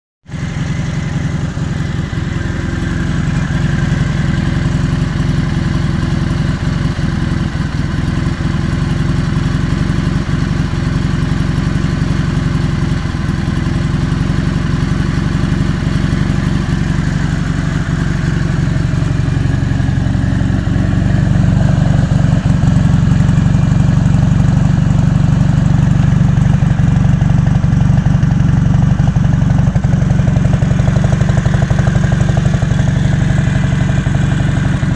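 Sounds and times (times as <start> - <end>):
motorcycle engine idling: 0.2 - 34.9.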